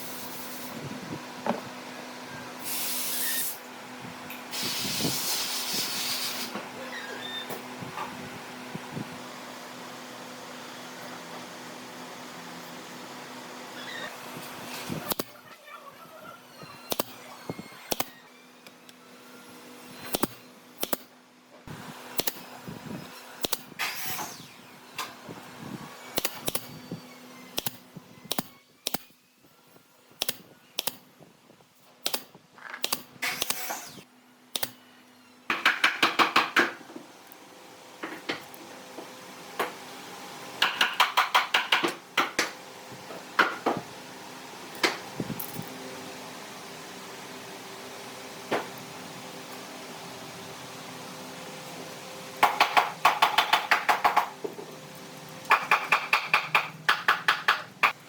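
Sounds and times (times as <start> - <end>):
hand tools knocking on wood: 35.5 - 36.8, 40.6 - 42.6, 52.4 - 54.7, 55.5 - 58.0.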